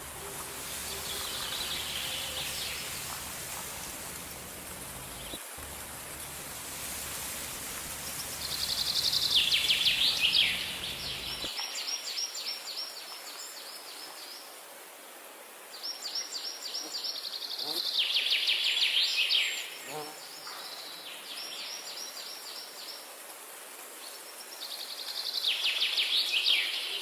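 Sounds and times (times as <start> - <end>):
songbird singing: 0.0 - 11.9
steady background hiss: 0.0 - 27.0.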